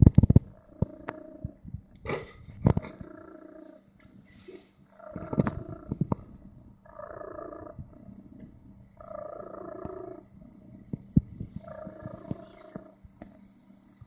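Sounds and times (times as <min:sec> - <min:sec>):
cat snoring: 0:09.0 - 0:13.0.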